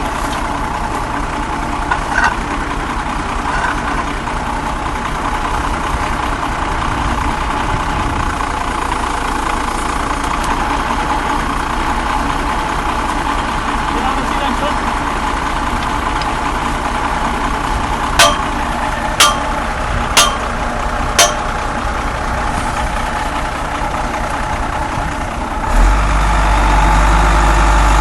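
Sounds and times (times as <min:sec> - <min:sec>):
truck engine running: 0:00.0 - 0:28.0
short knocks: 0:18.2 - 0:18.6, 0:19.2 - 0:19.6, 0:20.2 - 0:20.6, 0:21.2 - 0:21.5.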